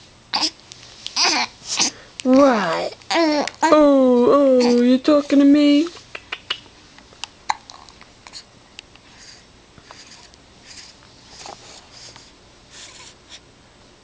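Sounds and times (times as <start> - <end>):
baby breathing softly: 8.2 - 13.4.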